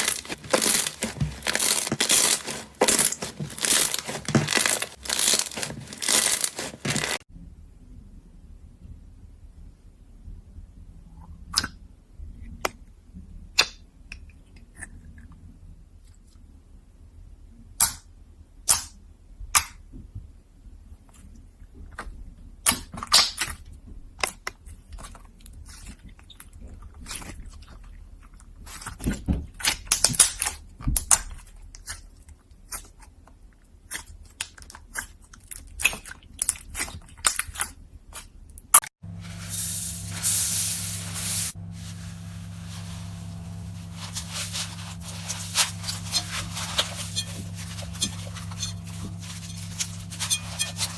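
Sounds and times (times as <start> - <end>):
slime crackling and popping: 0.0 - 7.2
electrical hum: 39.0 - 50.9.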